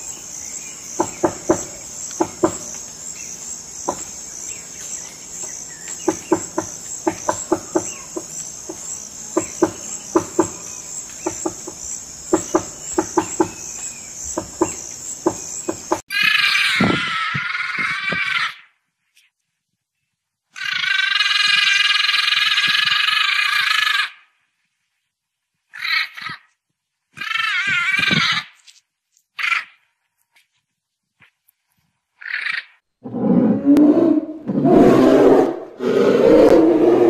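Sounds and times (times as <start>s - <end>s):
high animal calls: 16.1s - 18.7s, 20.5s - 24.2s, 27.2s - 28.6s
low rasping growl: 33.0s - 37.0s.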